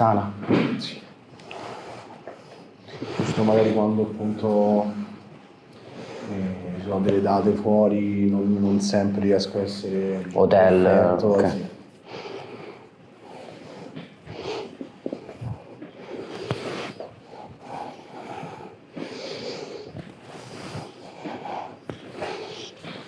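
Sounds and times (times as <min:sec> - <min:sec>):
person breathing: 0:05.8 - 0:07.8, 0:11.9 - 0:23.0.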